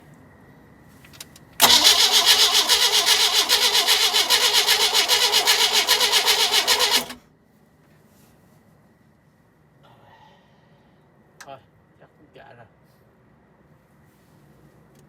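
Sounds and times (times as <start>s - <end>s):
boat engine cranking on starter: 1.6s - 7.2s.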